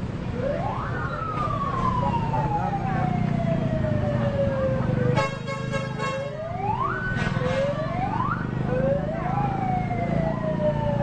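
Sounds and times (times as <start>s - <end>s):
bus horn wailing: 5.2s - 6.4s, 7.1s - 7.8s
multi-tone horn blast: 5.2s - 6.4s, 7.1s - 7.8s.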